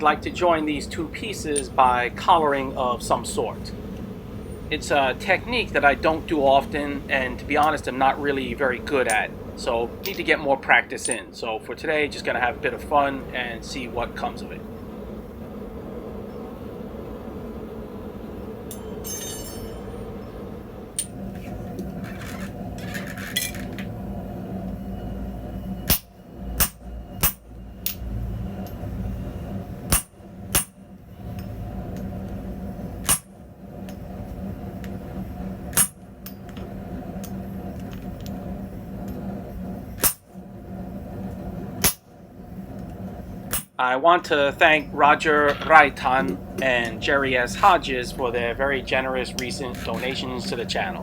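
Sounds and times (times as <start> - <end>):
steady low hum: 0.0 - 51.0
metal tools clinking: 18.7 - 20.0, 22.0 - 23.9.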